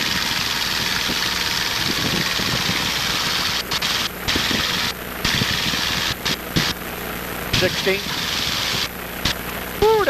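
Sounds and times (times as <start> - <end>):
airplane engine drone: 0.0 - 10.0
strong even hiss: 7.5 - 10.0.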